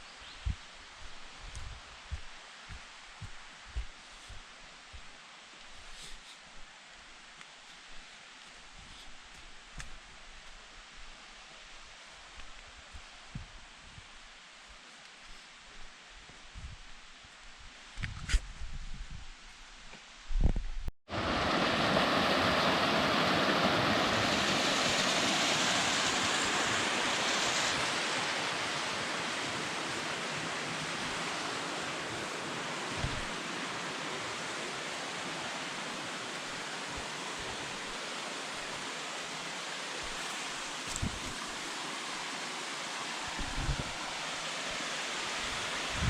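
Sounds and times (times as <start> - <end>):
waterfall rushing: 21.1 - 46.0.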